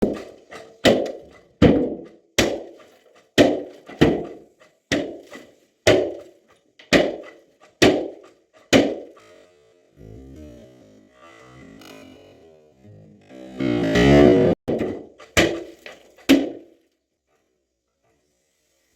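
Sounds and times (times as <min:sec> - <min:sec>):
hammer knocking on wood: 0:00.0 - 0:02.7, 0:03.4 - 0:05.3, 0:05.9 - 0:09.1.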